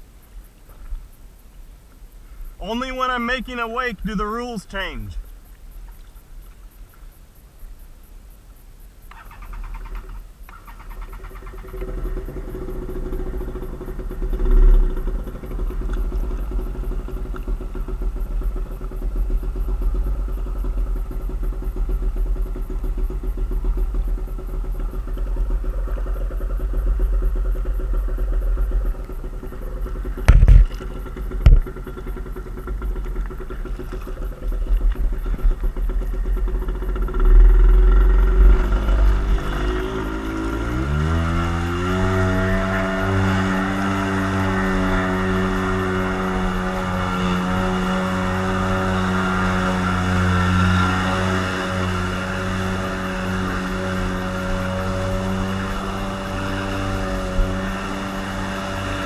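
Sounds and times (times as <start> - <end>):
boat motor running: 10.5 - 59.0
wind rumble on microphone: 11.8 - 59.0.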